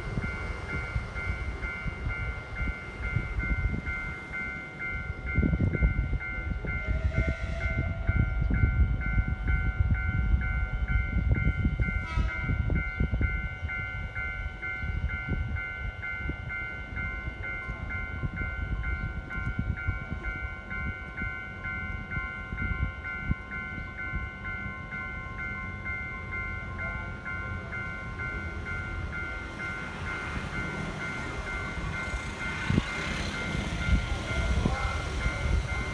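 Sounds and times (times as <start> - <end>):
passing train rumble: 0.0 - 35.9
railway crossing chime: 0.0 - 35.9.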